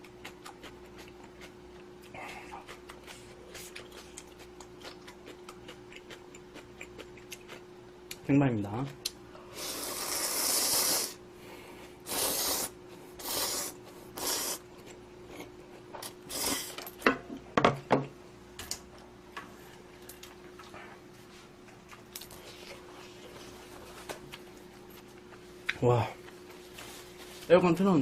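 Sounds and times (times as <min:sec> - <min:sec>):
slurping noodles: 0:09.6 - 0:11.2, 0:12.1 - 0:14.6.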